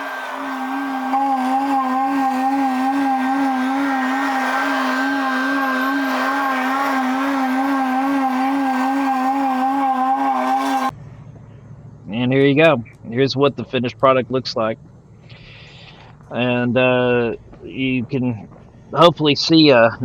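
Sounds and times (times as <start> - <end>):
high machine engine whine: 0.0 - 10.9.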